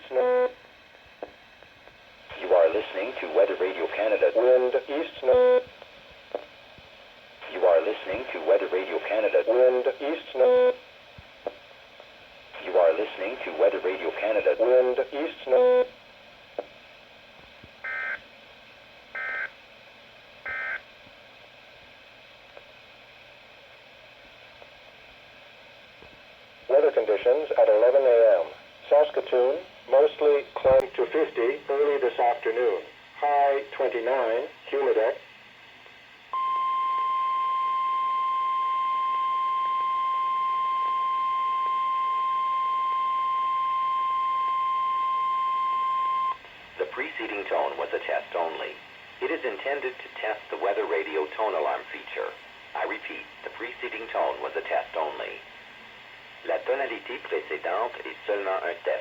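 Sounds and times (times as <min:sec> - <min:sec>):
faint radio hiss: 0:00.0 - 0:59.0
continuous steady beep: 0:19.2 - 0:19.5, 0:20.5 - 0:20.8, 0:36.3 - 0:46.4.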